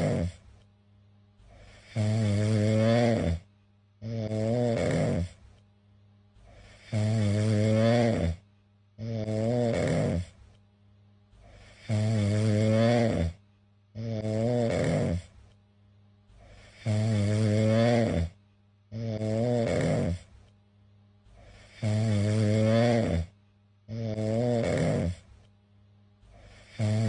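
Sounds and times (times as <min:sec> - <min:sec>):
cat snoring: 0:00.0 - 0:00.4, 0:01.4 - 0:05.4, 0:06.4 - 0:08.4, 0:09.0 - 0:10.4, 0:11.4 - 0:13.4, 0:14.0 - 0:15.4, 0:16.4 - 0:20.4, 0:21.3 - 0:25.3, 0:26.3 - 0:27.0.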